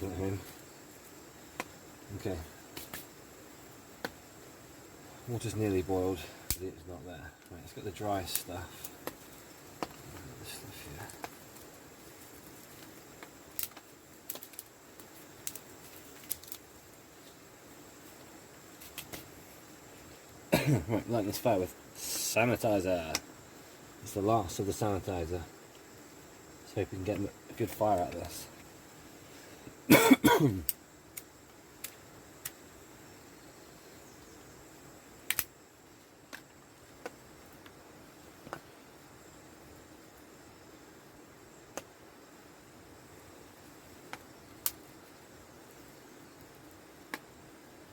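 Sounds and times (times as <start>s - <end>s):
faint steady hiss: 0.0s - 47.9s
fire popping: 0.0s - 47.9s
wood fire crackling: 0.0s - 47.9s
kindling clicking and snapping: 6.4s - 6.7s, 8.3s - 10.3s, 11.0s - 11.7s, 12.6s - 16.7s, 18.8s - 19.3s, 35.2s - 35.6s, 44.1s - 44.8s, 47.1s - 47.3s.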